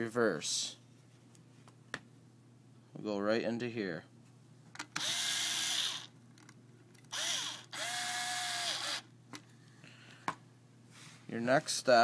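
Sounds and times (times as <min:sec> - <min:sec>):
electric screwdriver motor spinning: 0:05.0 - 0:06.1, 0:07.1 - 0:09.1.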